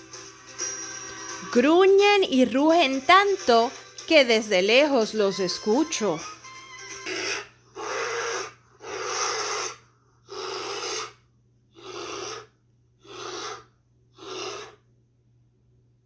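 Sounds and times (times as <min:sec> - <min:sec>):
bear huffing: 0:07.0 - 0:14.9.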